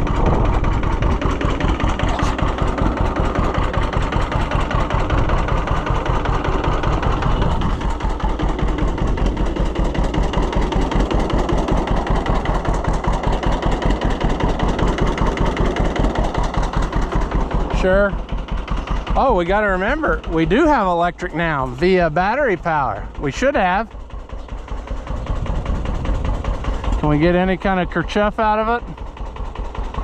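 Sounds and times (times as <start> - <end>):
tractor engine pulsing: 0.0 - 30.0.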